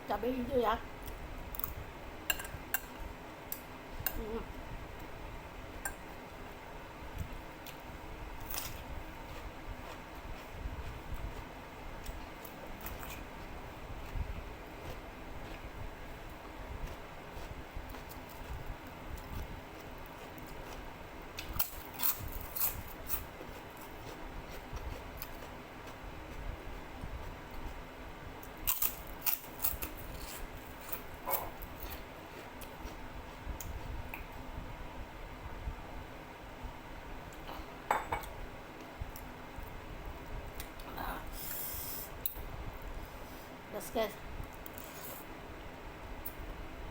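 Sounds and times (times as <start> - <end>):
cutlery clinking against bowl: 2.3 - 2.9
short hiss: 41.4 - 42.2.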